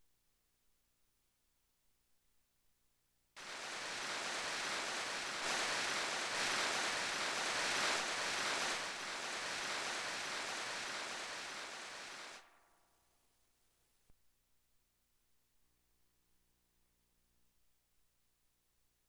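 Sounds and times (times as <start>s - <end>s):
steady rushing noise: 3.4s - 12.5s.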